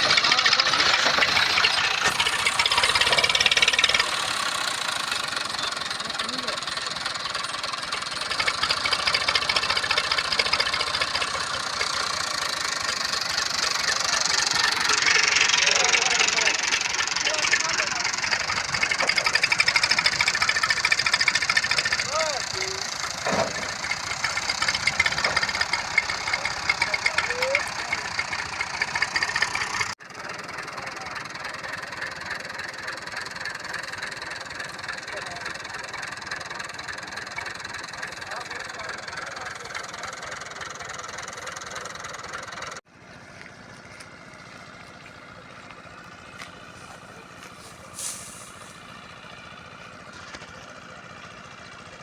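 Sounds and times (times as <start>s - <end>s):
thresher engine clattering: 0.0s - 42.8s, 43.6s - 52.0s.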